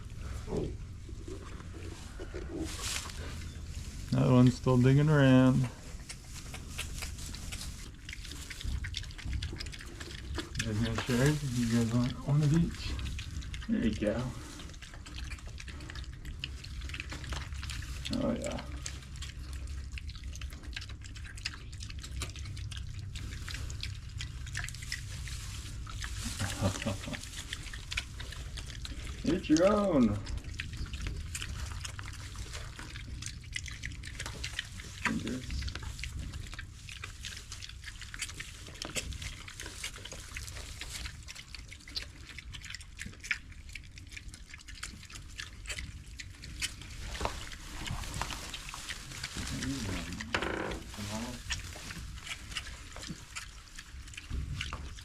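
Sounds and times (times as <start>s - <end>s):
steady low rumble: 0.0s - 41.6s
piglets chewing treats: 0.0s - 55.0s.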